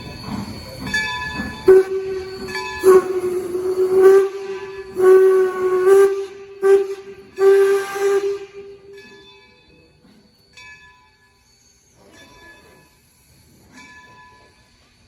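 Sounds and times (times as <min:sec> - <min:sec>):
steam hissing: 0:00.0 - 0:09.2
steam locomotive whistle: 0:00.3 - 0:09.2.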